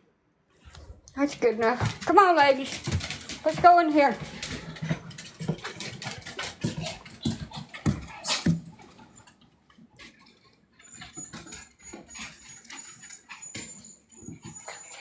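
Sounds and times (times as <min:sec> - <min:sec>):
dog claws clicking on hard floor: 0:00.7 - 0:09.0.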